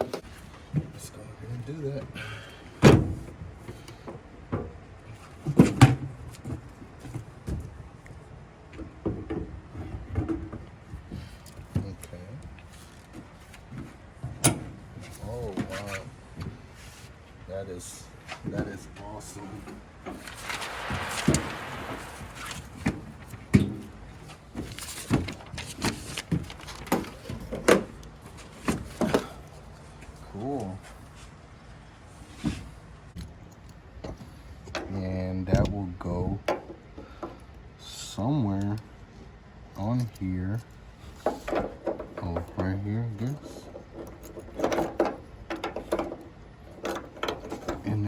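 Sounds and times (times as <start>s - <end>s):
toolbox parts clunking and knocking: 41.2s - 42.7s, 43.3s - 47.9s.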